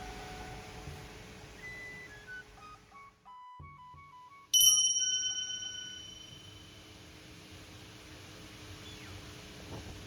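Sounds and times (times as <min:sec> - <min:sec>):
low even hum: 0:00.0 - 0:02.6
faint steady hiss: 0:00.0 - 0:03.1.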